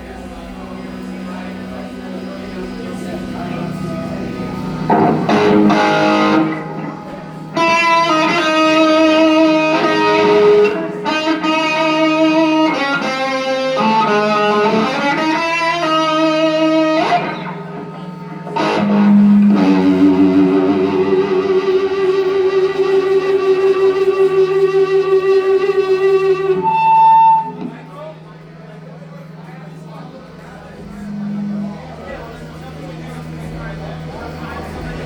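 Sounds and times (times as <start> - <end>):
electric guitar notes: 0.0 - 35.0.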